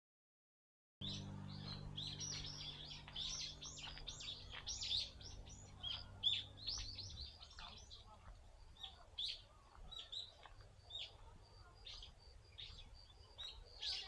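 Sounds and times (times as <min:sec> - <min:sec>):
steady low hum: 0:01.0 - 0:09.7
small birds chirping: 0:01.0 - 0:14.0.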